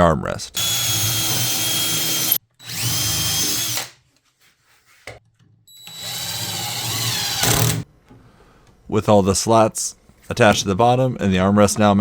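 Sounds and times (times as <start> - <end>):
drill driving screws into wood: 0.6 - 4.0, 5.8 - 7.8.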